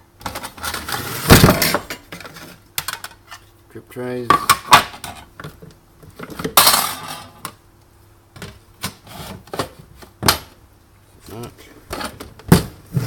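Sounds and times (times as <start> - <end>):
clicks and knocks of parts: 1.6 - 3.5.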